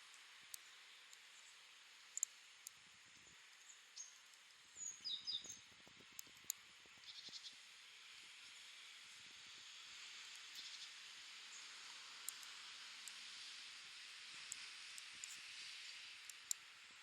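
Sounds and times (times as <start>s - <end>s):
steady outdoor hiss: 0.0s - 17.0s
small birds chirping: 3.1s - 7.6s.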